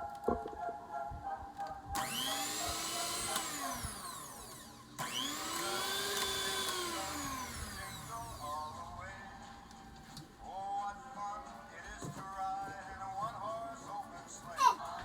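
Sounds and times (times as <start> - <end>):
kitchen mixer motor whine: 1.9 - 9.6.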